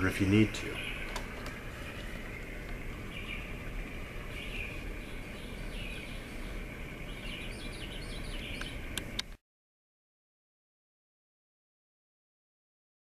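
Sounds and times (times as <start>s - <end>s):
recorded birdsong from speaker: 0.0s - 9.2s
steady hiss: 0.0s - 9.3s.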